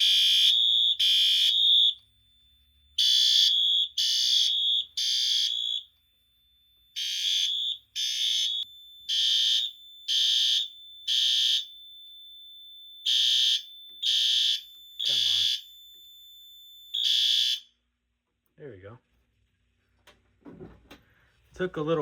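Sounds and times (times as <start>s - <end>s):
fire alarm horn blasts: 0.0s - 2.1s, 2.9s - 6.0s, 6.8s - 17.8s
thin steady high tone: 4.6s - 17.1s.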